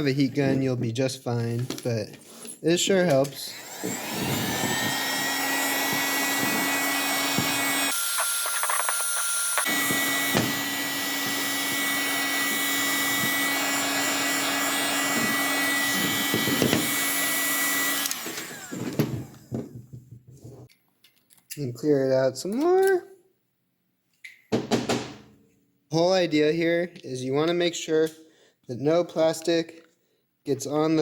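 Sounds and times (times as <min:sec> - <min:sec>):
heat gun blowing and whining: 0:02.9 - 0:19.7.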